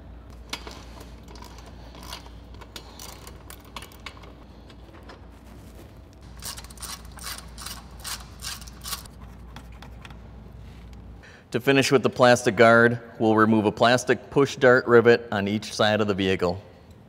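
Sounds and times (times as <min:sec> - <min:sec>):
ratchet wrench clicking: 0:06.4 - 0:09.1.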